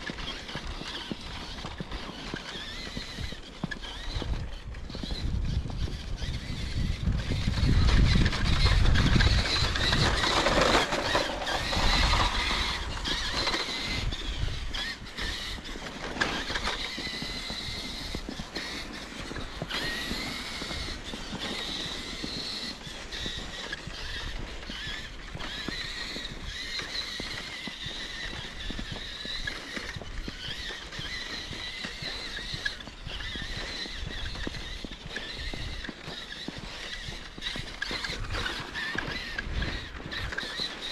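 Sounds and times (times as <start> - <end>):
electric motor whining: 0.0 - 40.9.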